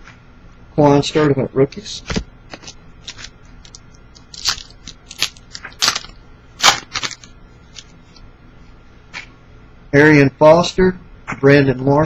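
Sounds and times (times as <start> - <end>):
foil wrapper crinkling and tearing: 2.5 - 7.9.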